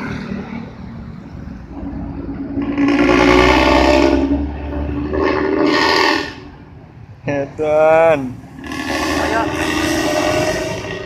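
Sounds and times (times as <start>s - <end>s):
bus engine rumbling: 0.0s - 11.0s
air horn blast: 2.5s - 4.5s, 5.1s - 6.6s, 8.6s - 11.0s.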